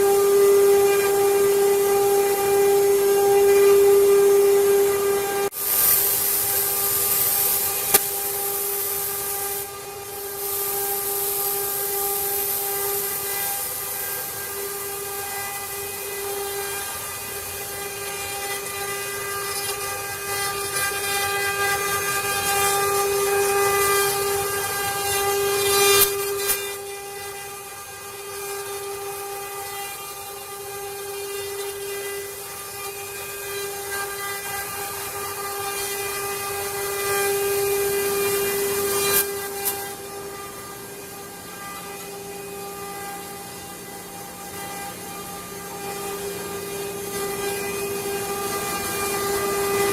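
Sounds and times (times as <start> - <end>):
hiss of cutting wood: 0.0 - 49.9
wood router spindle whining: 0.0 - 49.9.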